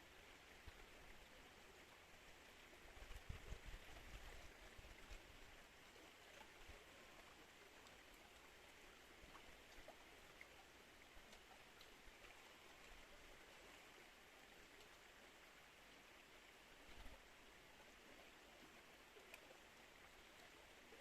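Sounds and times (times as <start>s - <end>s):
river water flowing: 0.0s - 21.0s
small drips and splashes: 0.4s - 21.0s.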